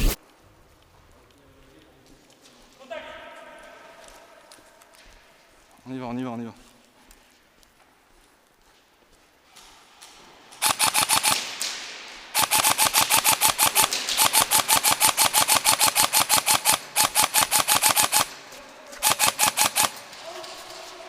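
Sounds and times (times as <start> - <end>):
airsoft rifle firing bursts: 10.6 - 18.4, 19.0 - 20.3.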